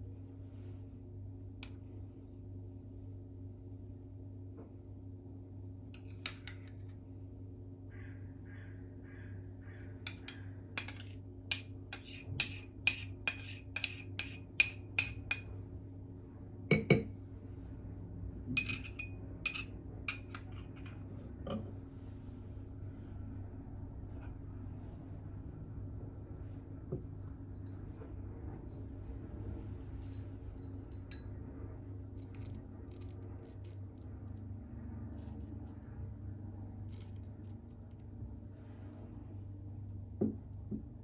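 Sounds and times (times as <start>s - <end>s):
steady low hum: 0.0s - 41.0s
glass and dishware clinking: 16.7s - 17.1s, 18.6s - 21.7s, 30.0s - 31.3s.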